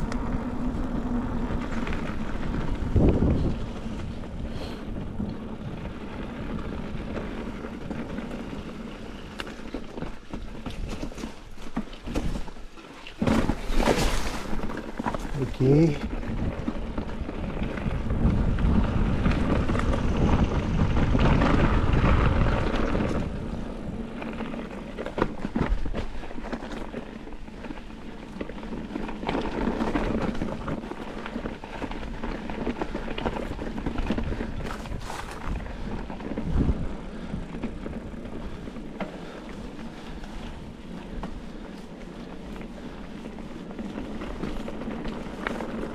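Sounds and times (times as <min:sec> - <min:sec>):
tyres rolling over dirt and stones: 0:00.0 - 0:45.9
bike knocks and rattles: 0:09.4 - 0:18.6, 0:24.2 - 0:36.8.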